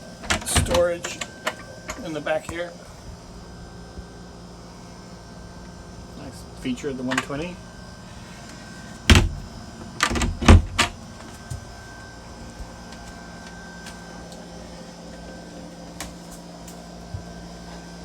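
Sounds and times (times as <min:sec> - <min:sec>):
dehumidifier hum: 0:00.0 - 0:18.0
cabin door knocking and thumping: 0:09.1 - 0:11.0.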